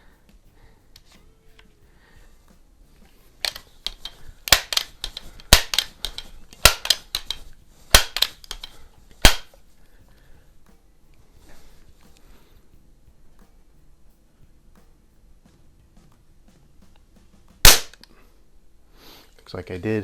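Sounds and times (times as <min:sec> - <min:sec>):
air rifle mechanical clacks: 0:02.5 - 0:10.8.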